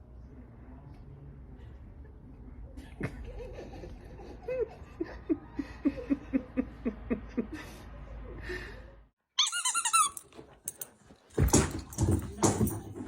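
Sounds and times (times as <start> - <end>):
squeaky voice sounds: 9.4 - 10.2.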